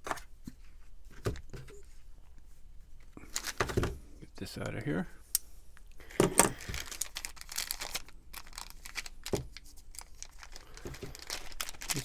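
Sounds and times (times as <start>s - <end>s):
packaging crinkling and rustling: 3.2s - 3.9s, 6.2s - 12.0s.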